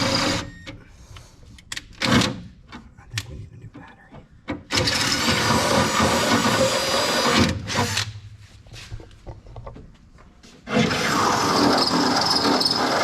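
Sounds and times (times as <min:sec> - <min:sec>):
cordless drill boring: 0:04.7 - 0:08.1, 0:10.7 - 0:13.0.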